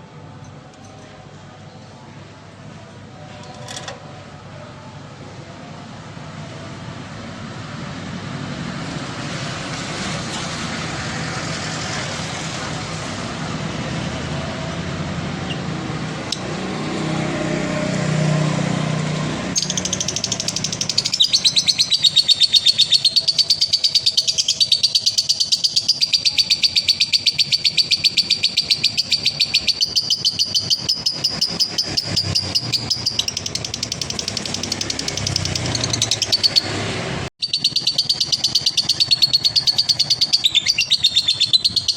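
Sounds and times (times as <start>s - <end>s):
lovebird chattering trill: 19.6s - 36.8s, 37.4s - 41.9s.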